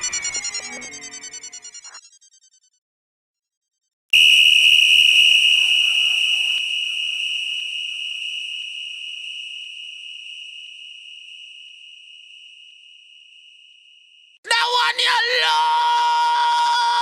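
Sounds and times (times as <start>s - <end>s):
high-pitched electronic tone: 0.0s - 2.7s.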